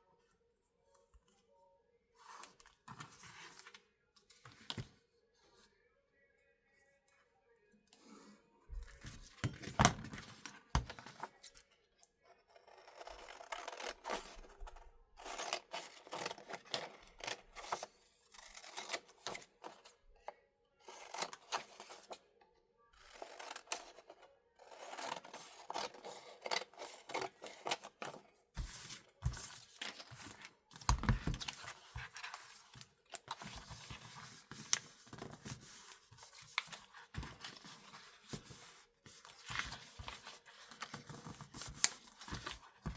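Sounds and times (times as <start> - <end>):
paper scraping and rustling: 24.8 - 42.9.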